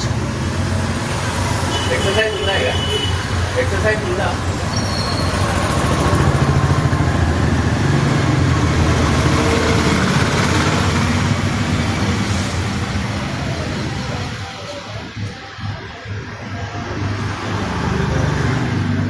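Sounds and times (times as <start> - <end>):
vehicle engine running: 5.1 - 19.0.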